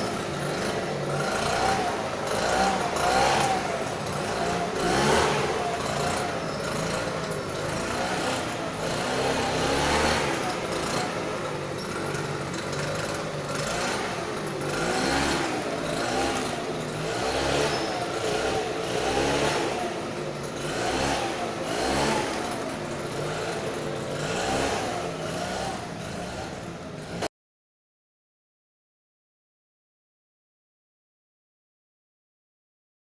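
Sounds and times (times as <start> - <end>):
small engine revving: 0.0 - 27.3.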